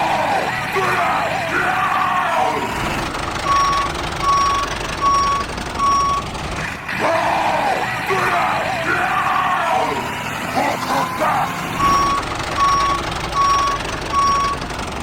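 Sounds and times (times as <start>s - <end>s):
steady machine noise: 2.6s - 15.0s
reversing alarm beeps: 3.4s - 6.3s, 10.8s - 15.0s.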